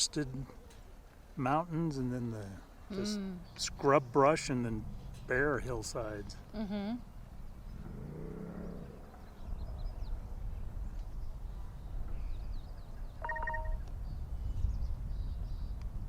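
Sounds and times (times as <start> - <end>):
wind rumbling on microphone: 3.4 - 16.0
short beep-like tone: 13.2 - 13.8
faint high chirps: 13.2 - 13.9.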